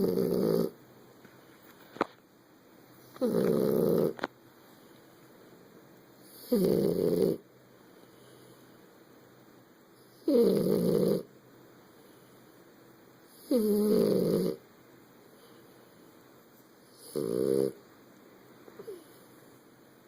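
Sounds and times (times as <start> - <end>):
dog snoring: 0.0 - 0.8, 3.0 - 4.3, 6.2 - 7.5, 10.0 - 11.3, 13.3 - 14.6, 16.8 - 17.8, 18.8 - 19.3.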